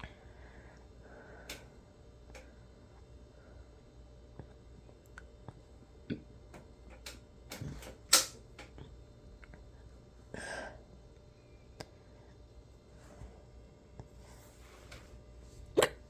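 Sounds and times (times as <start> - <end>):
person hiccuping: 15.8 - 16.0.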